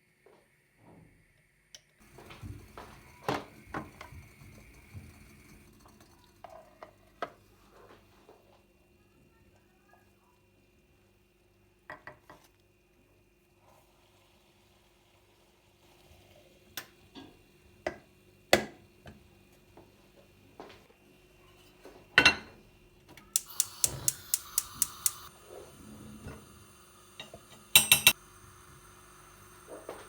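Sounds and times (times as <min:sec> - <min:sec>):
quick clicks: 0:23.4 - 0:25.3
dishes and cutlery clinking: 0:27.2 - 0:28.2.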